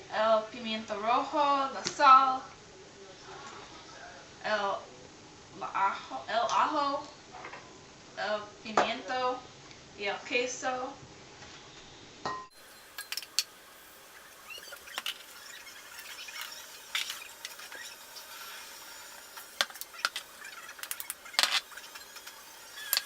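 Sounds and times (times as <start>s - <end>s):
utensils clinking against dishes: 12.3s - 13.6s, 14.3s - 23.0s.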